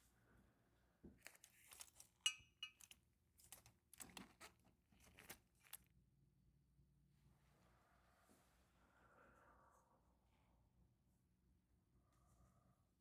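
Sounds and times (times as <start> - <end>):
small metal parts clinking: 1.7 - 4.2.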